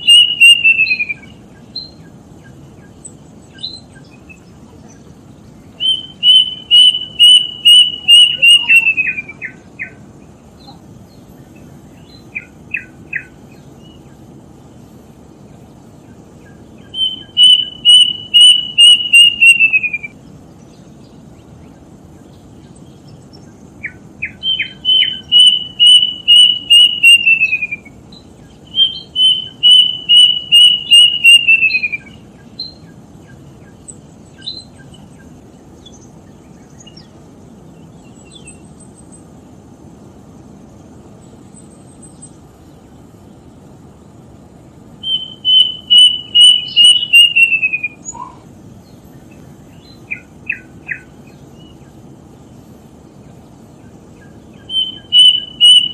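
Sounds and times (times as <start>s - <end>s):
bird calling rapid high notes: 0.0s - 1.3s, 5.8s - 10.0s, 16.9s - 20.2s, 24.3s - 27.9s, 28.7s - 32.1s, 45.0s - 48.4s, 54.7s - 55.9s.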